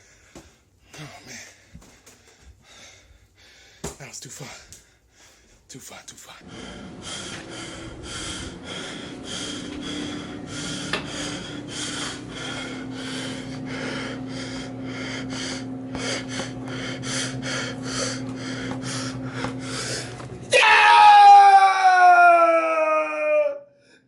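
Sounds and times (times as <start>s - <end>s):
person panting hard: 0.0s - 5.7s, 6.4s - 20.3s
low motor hum: 6.4s - 22.7s.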